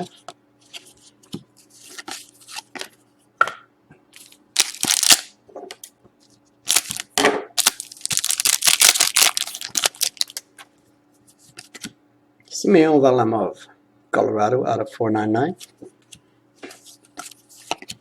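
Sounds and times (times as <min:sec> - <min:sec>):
wrapper tearing and crumpling: 0:04.6 - 0:05.3, 0:06.7 - 0:10.4
cards sliding: 0:16.1 - 0:18.0.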